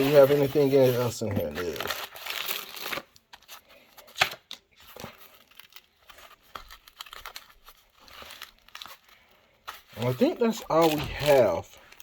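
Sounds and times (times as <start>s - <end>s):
paper and plastic crinkling: 0.0s - 12.0s.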